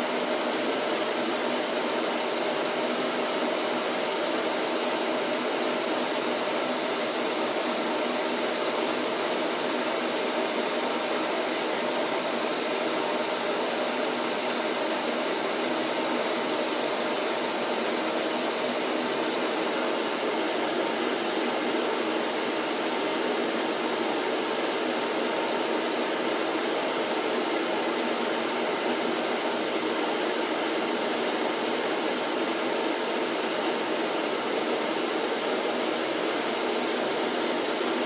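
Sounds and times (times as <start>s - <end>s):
vacuum cleaner running: 0.0s - 38.0s.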